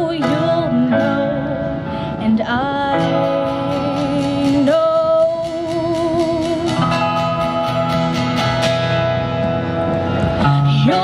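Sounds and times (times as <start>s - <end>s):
person singing with vibrato: 0.0s - 7.5s, 10.4s - 11.0s
strummed acoustic guitar: 0.1s - 11.0s.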